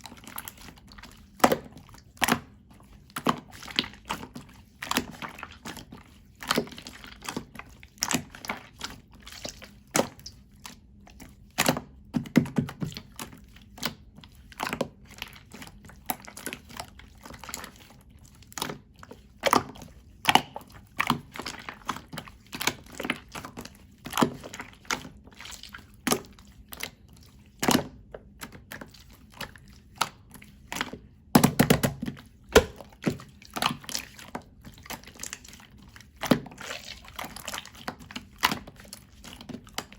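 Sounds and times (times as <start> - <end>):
slime squelching thumps: 27.5 - 35.5.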